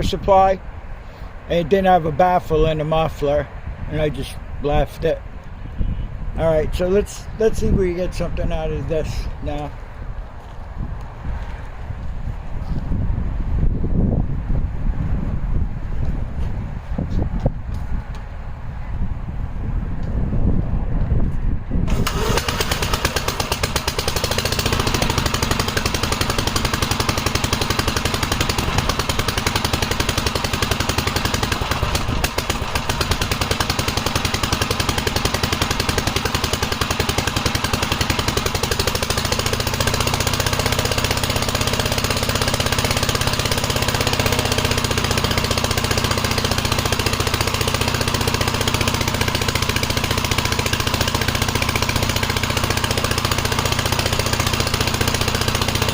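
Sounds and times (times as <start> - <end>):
loud fast-pulsing engine: 21.9 - 55.9.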